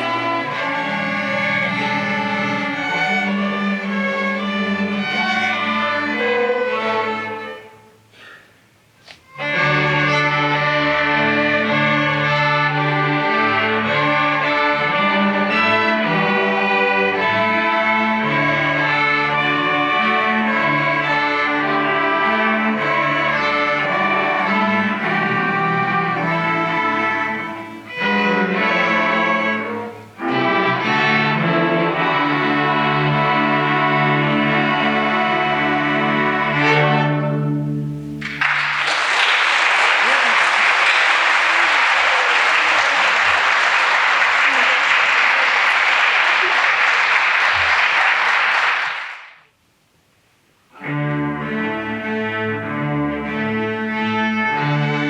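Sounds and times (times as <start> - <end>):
string orchestra playing: 0.0 - 8.1, 9.2 - 39.4, 50.7 - 55.0.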